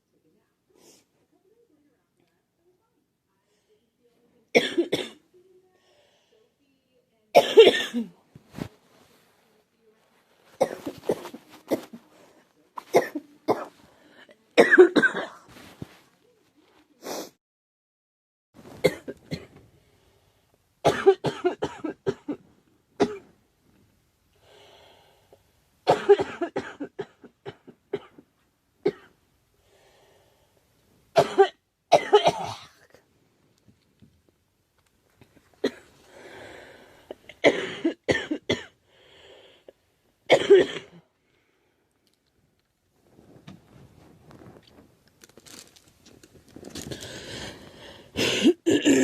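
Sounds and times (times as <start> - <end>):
girl coughing: 4.6 - 5.2, 7.4 - 8.1, 10.6 - 12.0, 12.8 - 13.7, 14.6 - 15.5, 18.8 - 19.5, 20.8 - 22.4, 23.0 - 23.3, 25.9 - 28.1, 31.2 - 33.0, 35.6 - 35.9, 37.2 - 38.7, 40.3 - 41.0, 47.2 - 49.0.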